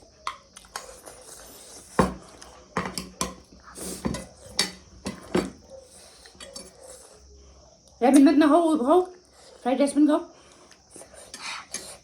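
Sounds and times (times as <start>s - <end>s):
cutlery clinking on plates: 2.8s - 5.6s, 6.3s - 6.8s.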